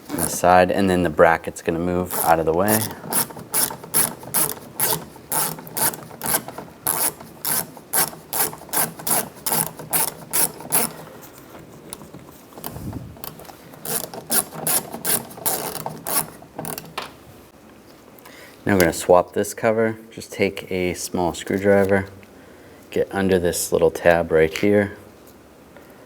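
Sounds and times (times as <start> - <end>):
hand ratchet clicking: 2.1 - 11.1, 11.9 - 17.0.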